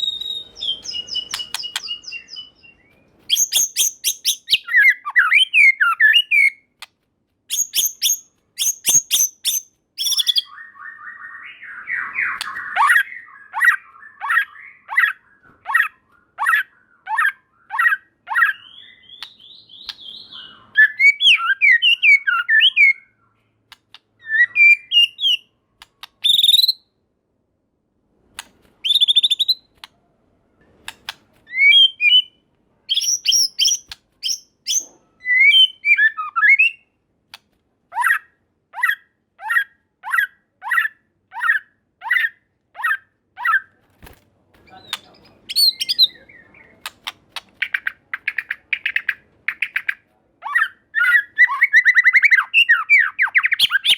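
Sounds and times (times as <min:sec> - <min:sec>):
clear whistled bird notes: 0:00.0 - 0:06.6, 0:07.5 - 0:23.4, 0:31.5 - 0:36.9
bird singing: 0:00.0 - 0:06.7, 0:07.5 - 0:23.6, 0:24.2 - 0:26.9, 0:28.8 - 0:29.8, 0:31.5 - 0:36.9, 0:44.7 - 0:46.9, 0:47.6 - 0:53.9
sharp bird clicks: 0:00.6 - 0:02.4, 0:12.2 - 0:13.0, 0:18.6 - 0:20.3, 0:23.7 - 0:24.1, 0:25.0 - 0:26.7, 0:30.8 - 0:31.3, 0:32.9 - 0:34.9, 0:44.8 - 0:50.0.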